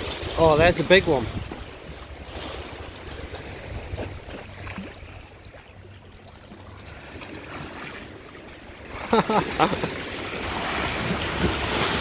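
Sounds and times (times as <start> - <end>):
wind rumbling on microphone: 0.0 - 5.9
water lapping and splashing: 0.0 - 12.0.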